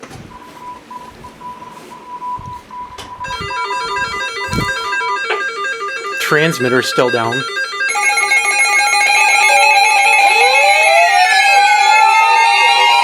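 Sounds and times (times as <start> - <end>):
steady warning alarm tone: 0.6 - 13.0
stepped electronic alarm melody: 1.0 - 13.0
radio static: 3.3 - 8.1.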